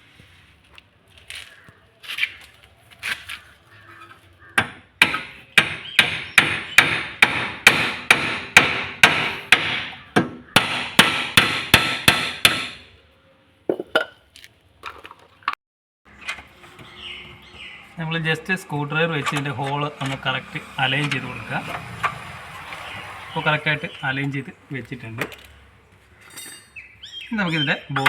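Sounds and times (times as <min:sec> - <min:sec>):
hammer striking metal: 0:04.6 - 0:12.8.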